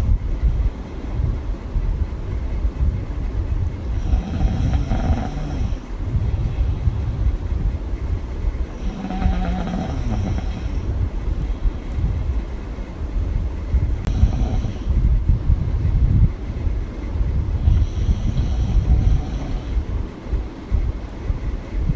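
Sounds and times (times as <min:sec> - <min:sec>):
low breath rumble: 0:00.0 - 0:21.9
woman snoring: 0:04.0 - 0:05.9, 0:08.7 - 0:10.9, 0:14.0 - 0:15.0, 0:17.6 - 0:19.8.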